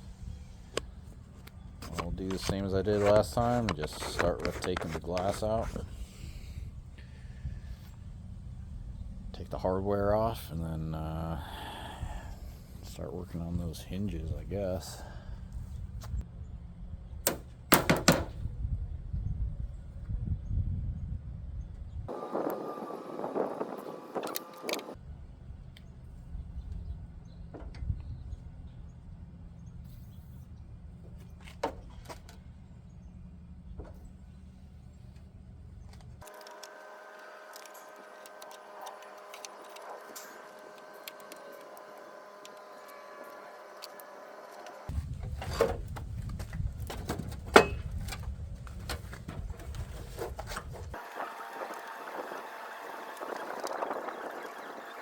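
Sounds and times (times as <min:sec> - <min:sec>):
steady low hum: 0:00.0 - 0:17.7
steady low rumble: 0:05.0 - 0:17.6.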